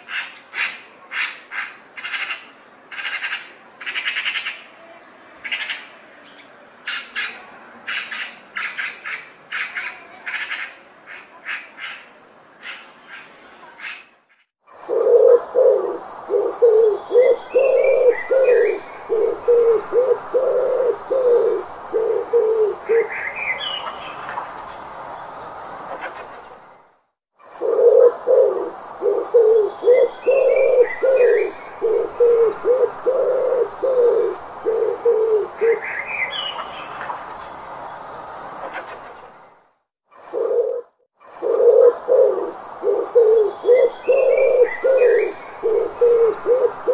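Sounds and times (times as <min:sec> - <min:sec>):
bird chirps: 0:11.8 - 0:24.7, 0:27.6 - 0:37.4, 0:40.2 - 0:46.9
bird hooting or cooing: 0:14.7 - 0:23.8, 0:27.4 - 0:36.4, 0:40.2 - 0:46.9
insect high-pitched trill: 0:14.7 - 0:46.9.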